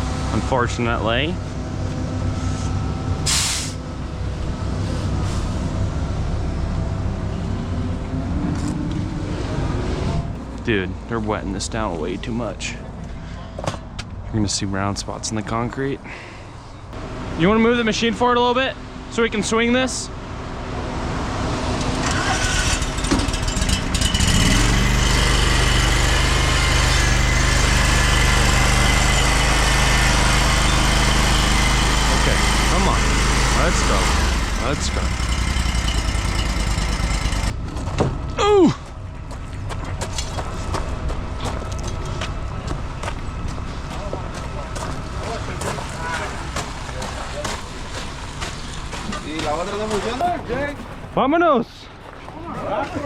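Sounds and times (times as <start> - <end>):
diesel engine droning: 0.0 - 52.8
machine engine starting and running: 20.1 - 38.4.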